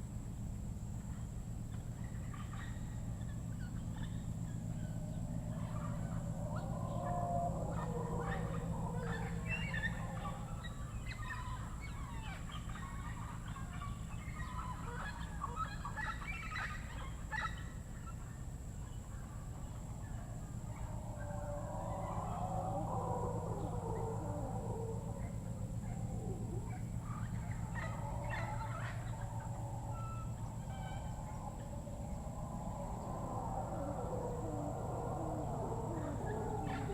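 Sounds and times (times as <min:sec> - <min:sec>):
steady low hum: 0:00.0 - 0:36.9
bird chorus: 0:00.8 - 0:36.9
thin steady high tone: 0:19.1 - 0:36.9.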